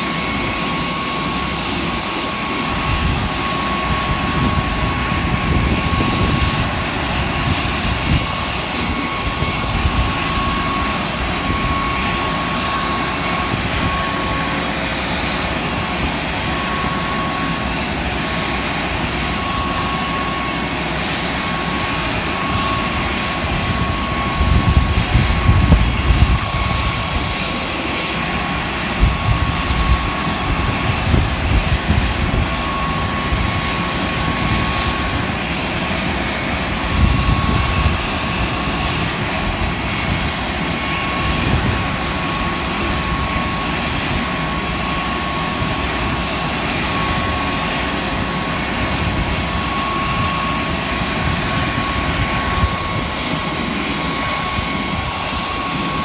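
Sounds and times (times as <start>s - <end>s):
jet engines running: 0.0s - 56.0s
thin constant whine: 0.0s - 56.0s
low gusty rumbles: 4.0s - 12.0s, 23.4s - 27.4s.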